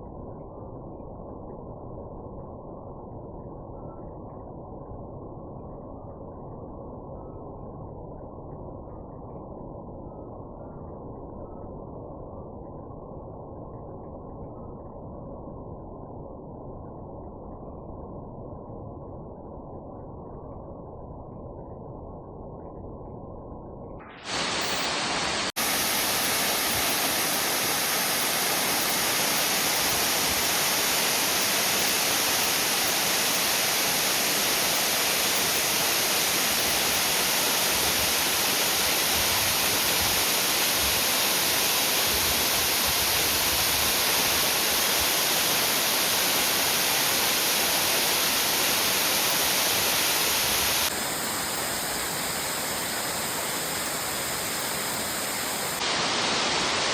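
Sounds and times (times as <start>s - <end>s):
waterfall rushing: 24.2s - 56.9s.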